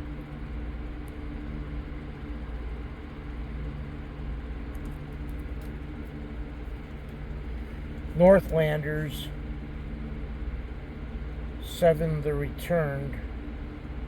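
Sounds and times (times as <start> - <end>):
low machine hum: 0.0 - 14.0
faint light clicks: 4.7 - 6.2.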